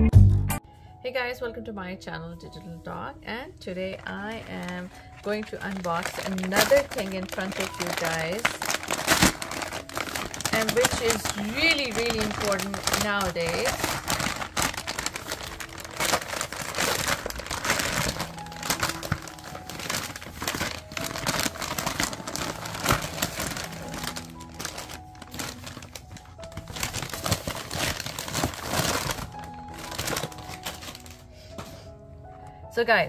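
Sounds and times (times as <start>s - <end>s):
soft background music: 0.0s - 33.0s
packaging crinkling and rustling: 3.8s - 31.8s
clicks from handled packaging: 5.2s - 31.1s.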